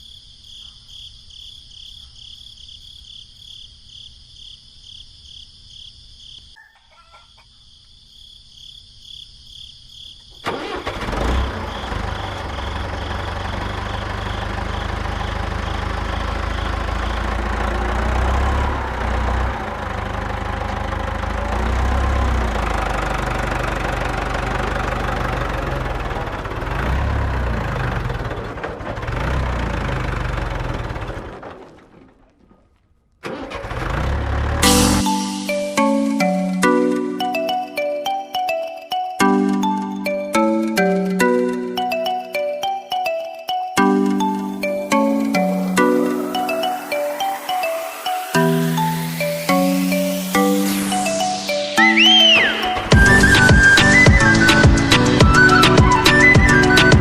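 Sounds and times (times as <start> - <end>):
crickets chirping: 0.0 - 17.5
small tractor engine running: 10.4 - 35.3, 52.8 - 57.0.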